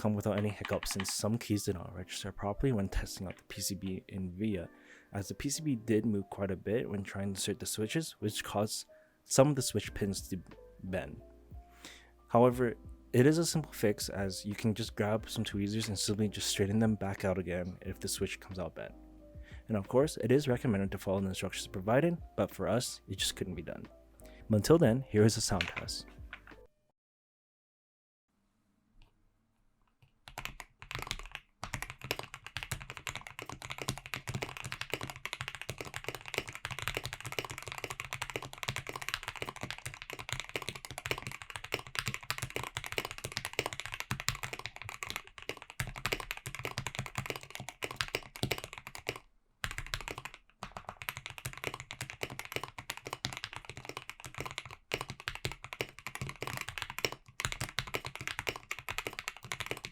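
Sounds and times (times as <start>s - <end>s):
fast mechanical keyboard typing: 0.0s - 1.4s, 30.3s - 59.9s.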